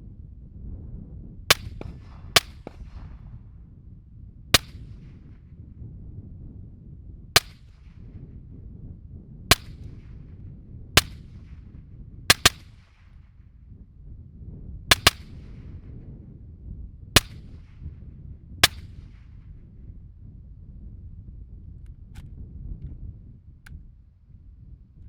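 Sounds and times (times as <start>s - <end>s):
suppressed rifle shots: 1.5s - 3.3s, 4.6s - 5.2s, 7.4s - 8.0s, 9.5s - 10.2s, 11.0s - 11.6s, 12.3s - 13.1s, 14.9s - 15.6s, 17.2s - 17.8s, 18.6s - 19.2s.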